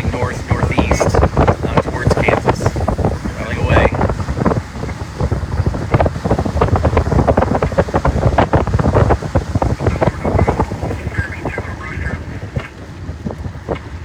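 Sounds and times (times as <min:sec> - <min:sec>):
road noise: 0:00.0 - 0:14.0
wind buffeting microphone: 0:00.0 - 0:14.0.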